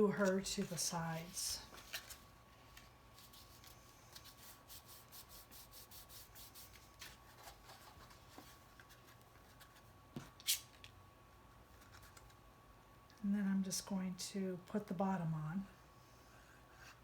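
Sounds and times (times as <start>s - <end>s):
cardstock rustling and rubbing: 0.2s - 9.9s.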